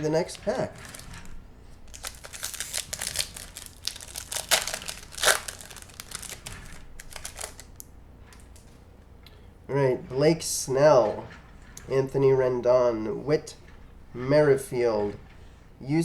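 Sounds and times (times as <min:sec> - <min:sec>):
foil wrapper crinkling and tearing: 0:00.4 - 0:01.1, 0:01.9 - 0:07.8.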